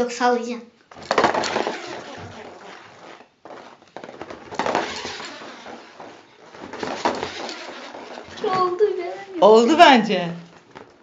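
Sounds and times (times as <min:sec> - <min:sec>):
beads rattling inside a balloon: 0:00.9 - 0:09.4.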